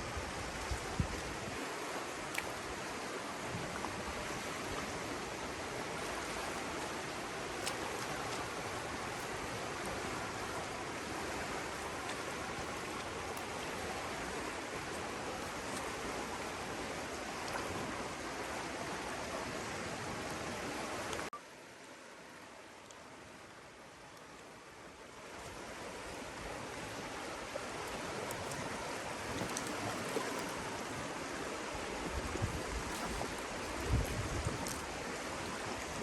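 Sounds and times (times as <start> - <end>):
river water rushing over rocks: 0.0 - 36.0
faint ticks: 2.3 - 2.6.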